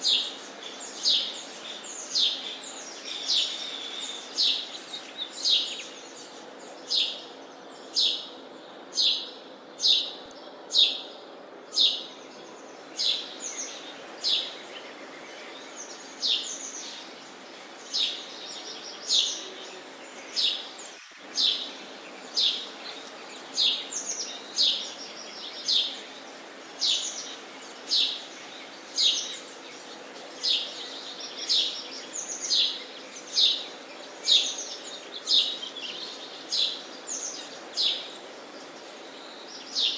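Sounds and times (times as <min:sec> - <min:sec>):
sparrow chirping: 0:00.0 - 0:08.4, 0:09.0 - 0:11.1, 0:11.7 - 0:14.6, 0:21.3 - 0:22.8, 0:26.8 - 0:39.9.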